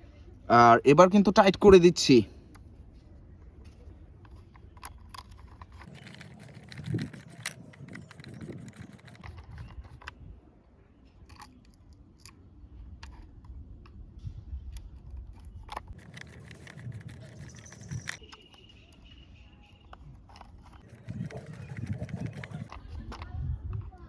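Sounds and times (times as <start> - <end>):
plastic parts clicking and creaking: 3.6 - 10.3, 11.0 - 14.0, 14.7 - 24.0.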